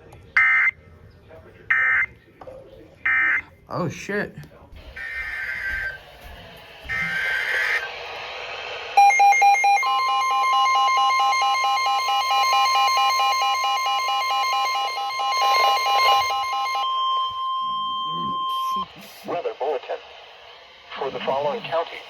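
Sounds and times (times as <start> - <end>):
steady single-pitch warning tone: 6.9 - 7.8, 9.0 - 18.9
data tones screech: 6.9 - 7.9, 13.5 - 16.8.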